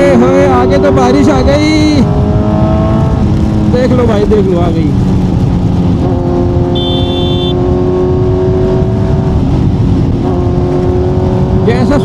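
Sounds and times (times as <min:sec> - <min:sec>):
motorcycle engine cruising: 0:00.0 - 0:12.0
wind and road noise: 0:00.0 - 0:12.0
short high beep: 0:06.7 - 0:07.6.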